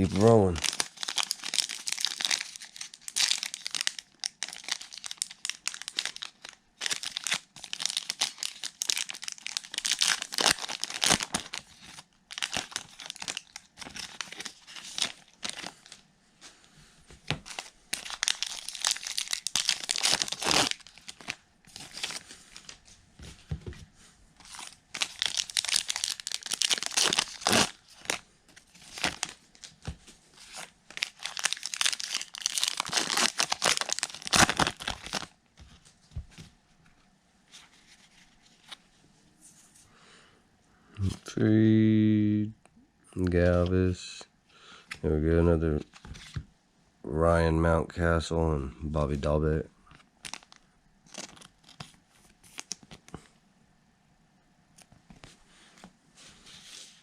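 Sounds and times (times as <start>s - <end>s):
wrappers tearing and crinkling: 0.0s - 16.0s, 17.4s - 22.8s, 24.4s - 35.3s, 50.2s - 53.2s.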